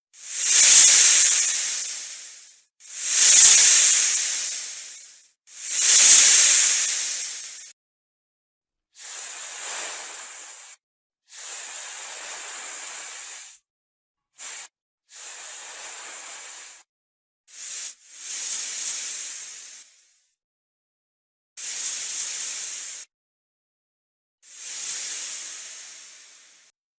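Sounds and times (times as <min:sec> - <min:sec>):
snake hissing: 0:00.2 - 0:07.8, 0:09.0 - 0:13.6, 0:14.4 - 0:16.9, 0:17.5 - 0:20.0, 0:21.6 - 0:23.1, 0:24.4 - 0:26.7.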